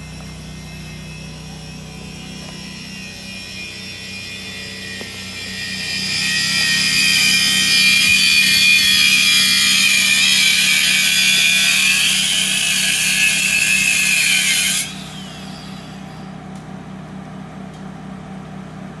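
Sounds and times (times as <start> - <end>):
low steady hum: 0.0 - 10.9
power tool high whine: 0.0 - 16.4.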